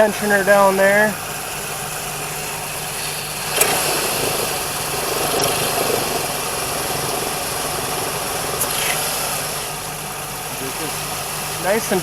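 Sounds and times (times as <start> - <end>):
car engine idling: 0.0 - 12.0
coarse mid-pitched belt noise: 1.3 - 12.0
compressor clutch click: 2.3 - 9.8.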